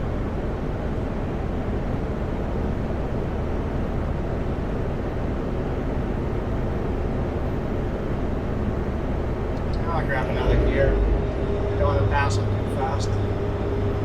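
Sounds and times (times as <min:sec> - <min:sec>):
truck diesel engine drone: 0:07.7 - 0:14.0
road noise: 0:08.3 - 0:14.0.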